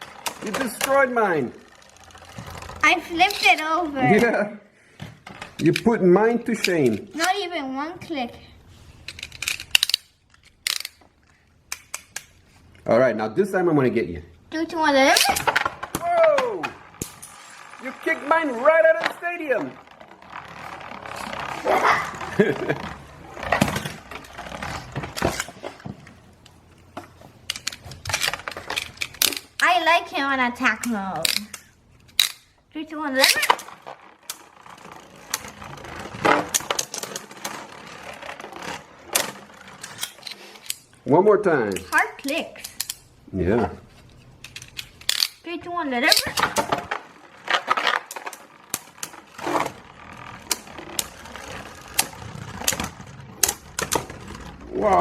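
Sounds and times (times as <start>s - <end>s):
plastic spinning tops clicking: 0.0s - 3.7s, 15.1s - 25.5s, 33.2s - 40.8s, 46.0s - 55.0s
spinning tops clashing clicks: 16.7s - 24.4s.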